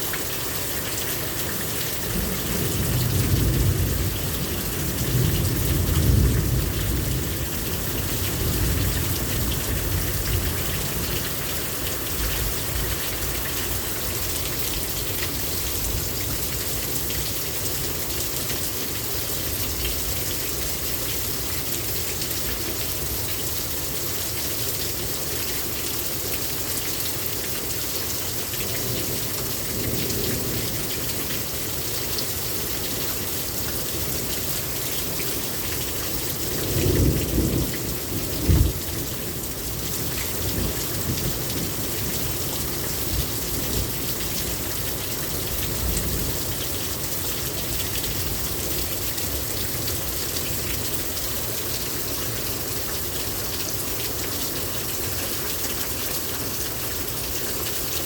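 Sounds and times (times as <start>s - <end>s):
rain pouring: 0.0s - 58.0s.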